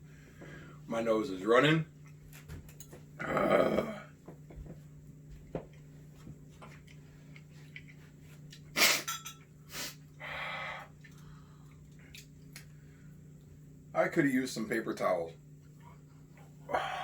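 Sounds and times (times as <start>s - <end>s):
steady low hum: 0.0s - 17.0s
man sniffing: 9.7s - 10.7s.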